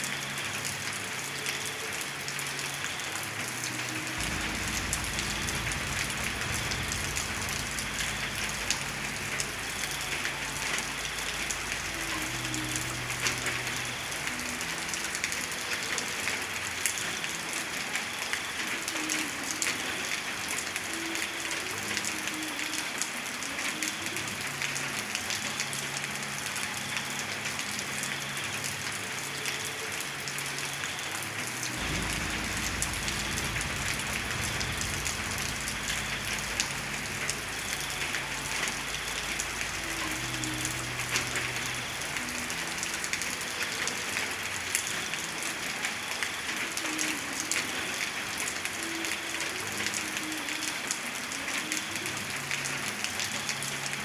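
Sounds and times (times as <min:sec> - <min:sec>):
steady rain falling: 0:00.0 - 0:54.0
low rumble: 0:04.2 - 0:09.8, 0:31.8 - 0:38.2.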